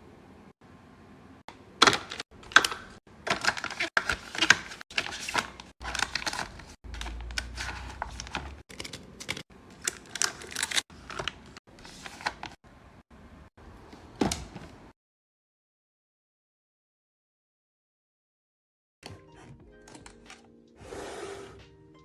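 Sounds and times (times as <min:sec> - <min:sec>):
plastic bottles clicking and clattering: 0:01.8 - 0:11.6.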